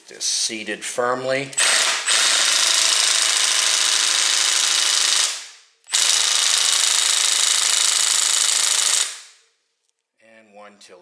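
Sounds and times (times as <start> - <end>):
impact wrench hammering: 1.6 - 9.3.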